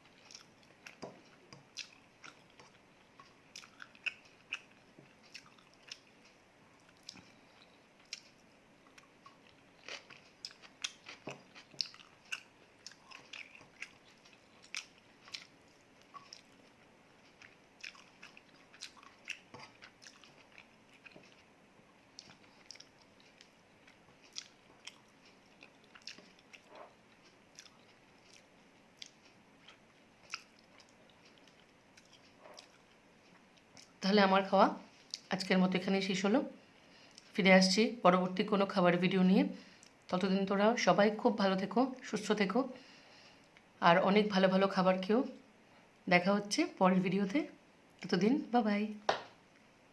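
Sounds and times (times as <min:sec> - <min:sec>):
person chewing crunchy food: 0:00.0 - 0:34.0.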